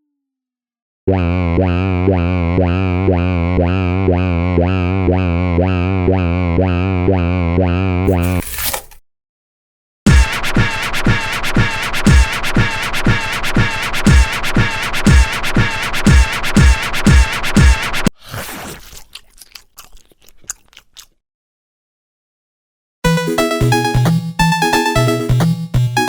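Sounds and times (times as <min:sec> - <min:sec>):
cartoon crossing alarm: 0:10.1 - 0:18.1, 0:23.1 - 0:26.0.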